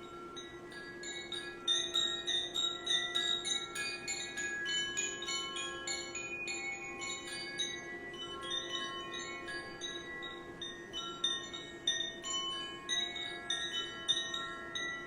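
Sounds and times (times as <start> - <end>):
chime tinkling: 0.0 - 15.0.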